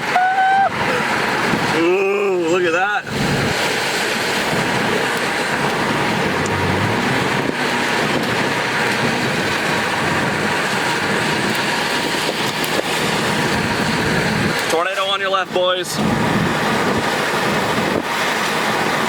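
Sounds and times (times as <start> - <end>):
car road and wind noise: 0.0 - 19.0.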